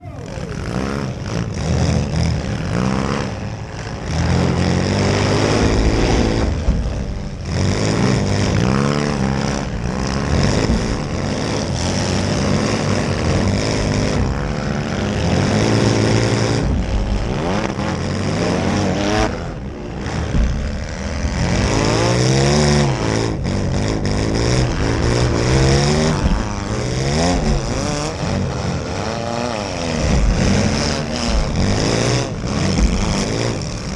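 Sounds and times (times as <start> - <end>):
car engines revving: 0.0 - 33.9
car collision bangs: 18.8 - 29.0.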